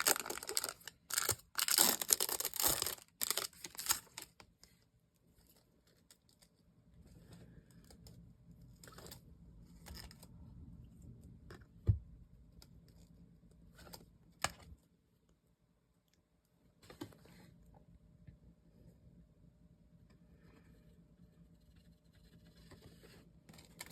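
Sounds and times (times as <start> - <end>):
card box packaging rustling: 0.0 - 4.4.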